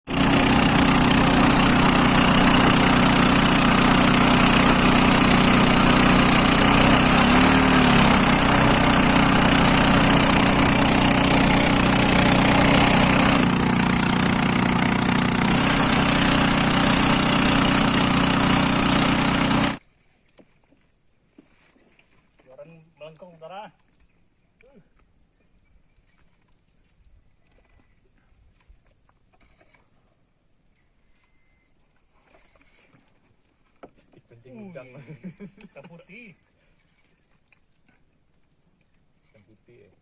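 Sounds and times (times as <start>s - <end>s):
engine running: 0.1s - 19.8s.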